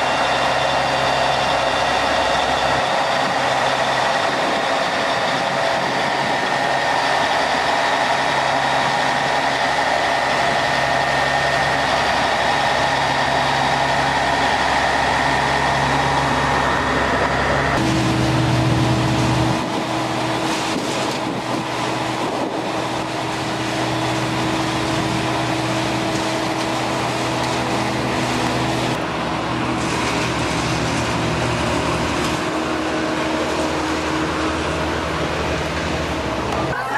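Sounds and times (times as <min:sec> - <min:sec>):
vehicle engine running: 0:00.0 - 0:36.9.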